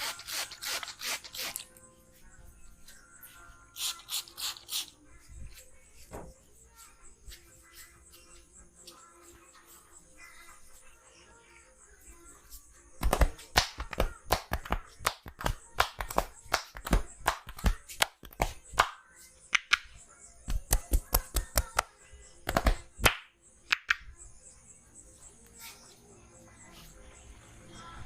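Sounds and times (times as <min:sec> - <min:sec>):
faint background music: 0:00.0 - 0:28.0
hands slapping on body: 0:13.0 - 0:19.9, 0:20.5 - 0:24.0.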